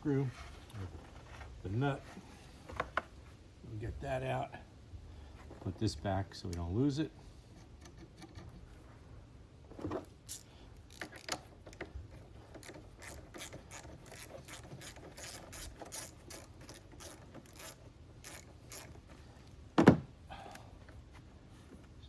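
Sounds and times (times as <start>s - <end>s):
ratchet wrench clicking: 10.3s - 11.9s, 12.6s - 19.0s.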